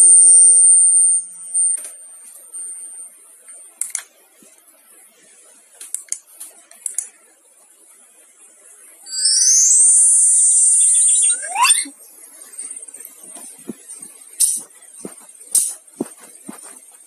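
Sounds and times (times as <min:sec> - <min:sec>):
thin high tone: 0:09.0 - 0:16.9.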